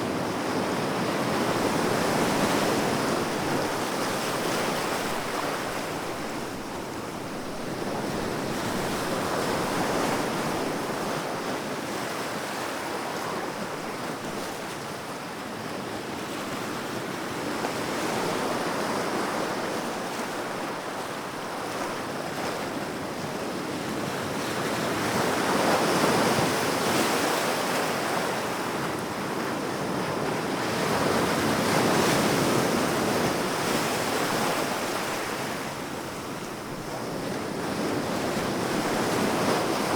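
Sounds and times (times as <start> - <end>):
sea waves washing ashore: 24.9 - 39.9.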